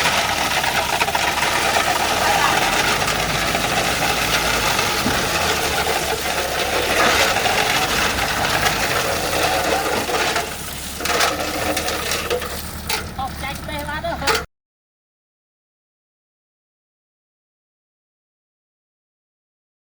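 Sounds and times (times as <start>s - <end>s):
diesel engine running with rattle: 0.0s - 14.5s.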